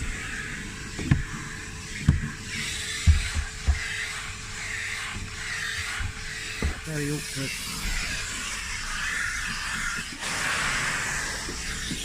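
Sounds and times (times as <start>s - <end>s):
vacuum cleaner running: 0.0s - 12.0s
vacuum nozzle knocking: 0.9s - 7.0s.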